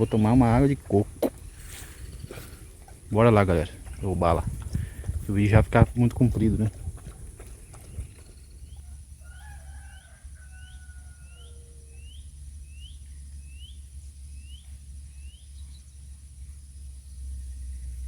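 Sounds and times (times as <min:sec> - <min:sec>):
steady low rumble: 0:00.0 - 0:10.4, 0:11.8 - 0:18.0
bird chirping high rising chirps: 0:11.3 - 0:16.1.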